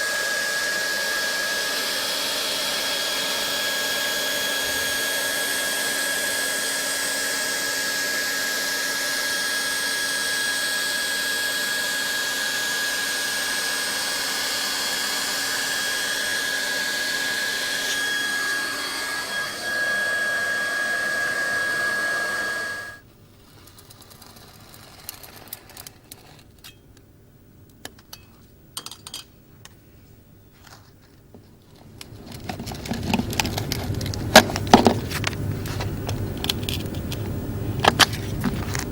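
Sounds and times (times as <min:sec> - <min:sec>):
hot-air gun blower whining: 0:00.0 - 0:23.1.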